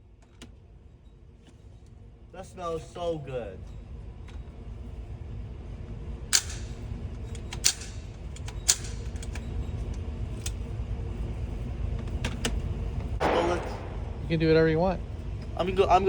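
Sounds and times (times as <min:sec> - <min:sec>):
gunshot cracks: 0:13.2 - 0:14.6
low rumble: 0:13.2 - 0:15.5.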